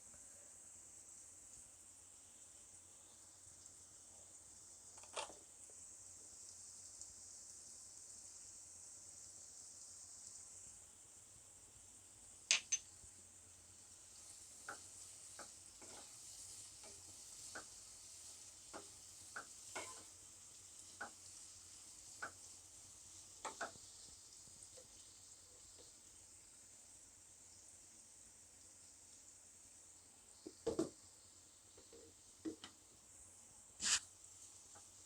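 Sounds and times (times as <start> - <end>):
onions sizzling in oil: 0.0 - 35.0
spoon scraping and tapping pan: 12.5 - 12.9, 14.6 - 17.8, 18.7 - 20.2, 20.9 - 21.3, 22.1 - 22.5, 23.4 - 23.9
spoon clinking on pan: 19.4 - 20.0.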